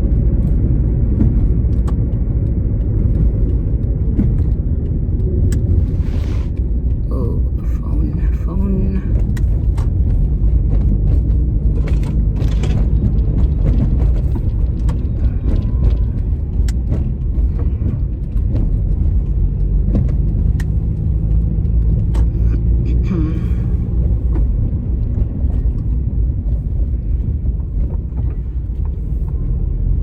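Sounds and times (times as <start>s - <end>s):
engine and road rumble: 0.0s - 30.0s
small clicks and rattles: 0.1s - 7.0s, 9.1s - 22.4s.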